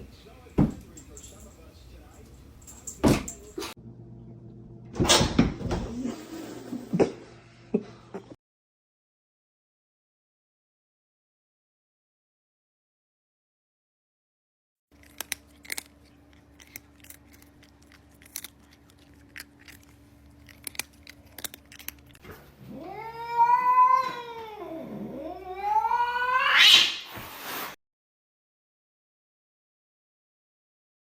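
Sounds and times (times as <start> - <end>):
cat yowling: 22.7 - 27.0.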